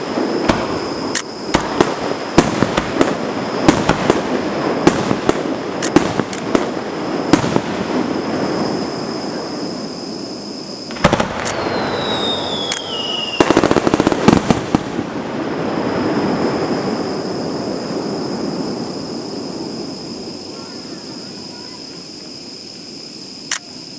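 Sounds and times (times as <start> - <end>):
firework rapid crackling: 0.0 - 20.8
firework bangs: 0.0 - 21.5
firework falling whistle: 6.9 - 21.8.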